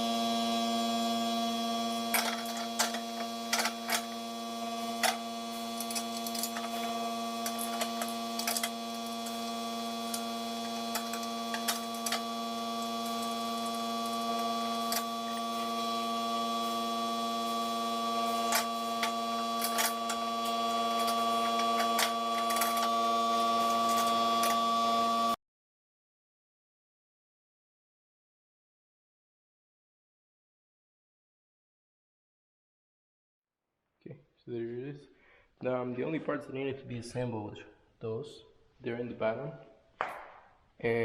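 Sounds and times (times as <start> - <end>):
electrical hum: 0.0 - 25.4
clicks and knocks of tools: 2.1 - 4.1, 7.4 - 8.8, 18.5 - 20.2, 21.0 - 22.9.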